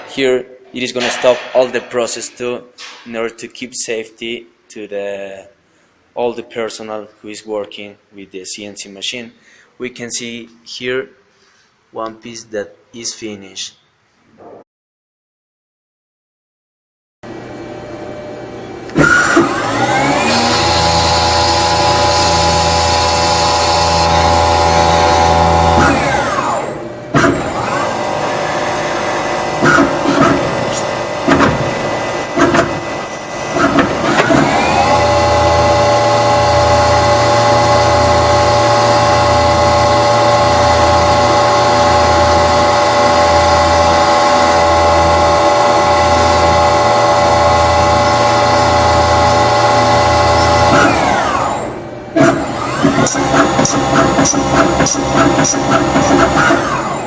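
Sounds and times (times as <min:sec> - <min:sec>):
drilling machine humming: 0:18.1 - 0:57.0
knocks and clatter: 0:31.3 - 0:31.8, 0:32.4 - 0:32.8.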